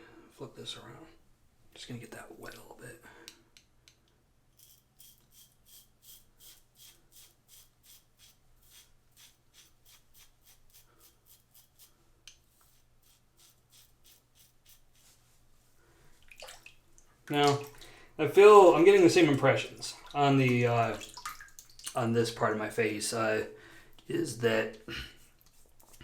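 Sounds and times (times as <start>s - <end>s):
razor scraping through stubble: 4.6s - 15.1s.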